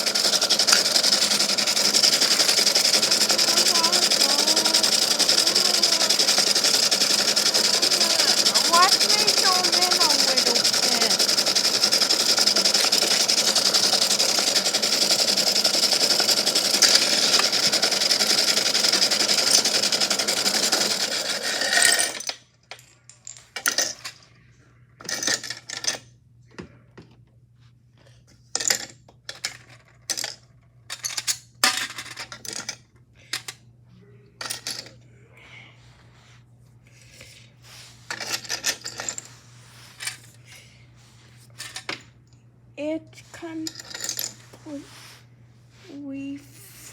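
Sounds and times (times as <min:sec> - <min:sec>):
small machine rattling and churning: 0:00.0 - 0:24.2, 0:38.1 - 0:39.3.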